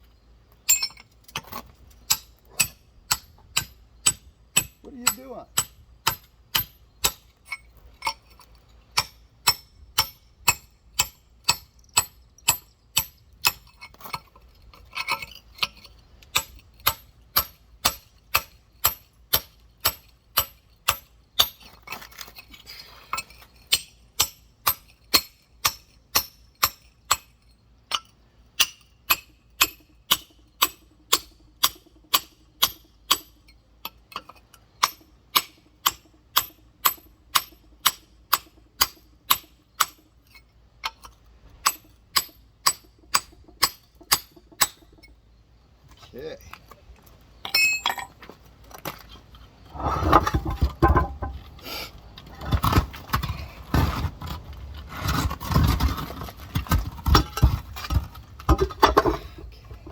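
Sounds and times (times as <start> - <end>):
rock hammer tapping stone: 2.1 - 7.2.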